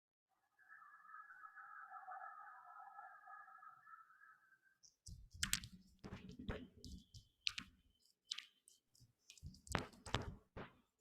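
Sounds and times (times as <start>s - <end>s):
keyboard and mouse clicks: 4.8s - 10.4s.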